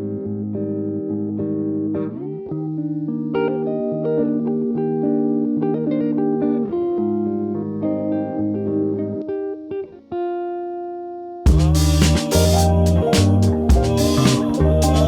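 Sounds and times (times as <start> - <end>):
plucked guitar melody: 0.0 - 10.8, 11.5 - 15.0
bass line: 11.5 - 15.0.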